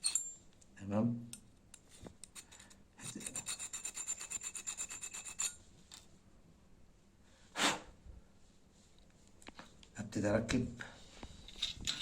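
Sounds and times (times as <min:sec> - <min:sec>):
sandpaper rasping on metal: 0:03.1 - 0:05.5.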